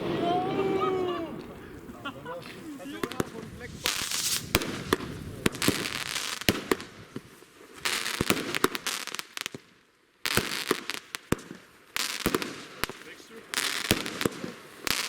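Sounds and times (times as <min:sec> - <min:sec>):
firework bangs with crackling: 0:02.8 - 0:15.0.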